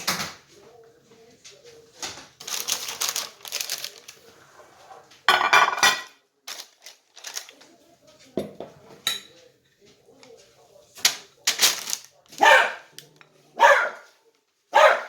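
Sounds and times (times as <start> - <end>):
utensil clinking on dishes: 5.3 - 6.2, 8.4 - 9.6.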